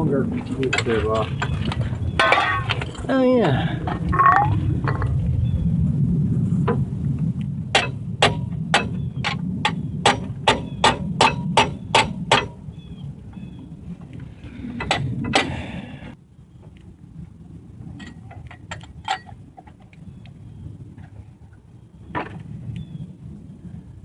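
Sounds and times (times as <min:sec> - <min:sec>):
hammer striking metal: 0:07.8 - 0:09.4, 0:10.0 - 0:12.6.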